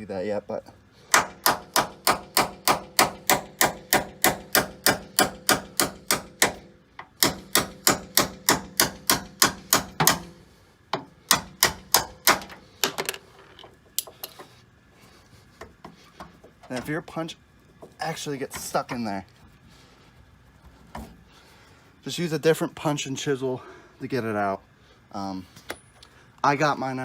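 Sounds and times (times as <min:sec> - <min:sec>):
hammer striking steel punch: 0:01.1 - 0:10.4, 0:11.0 - 0:12.6.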